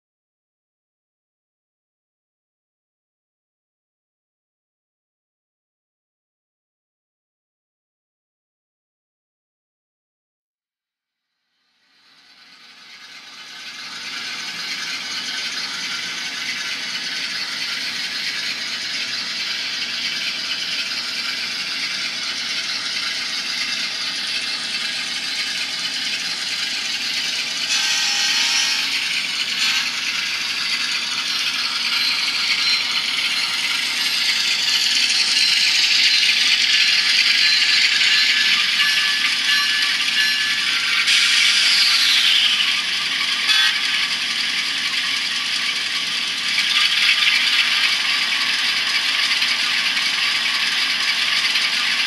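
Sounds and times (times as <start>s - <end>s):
model locomotive engine sound: 11.4s - 52.0s.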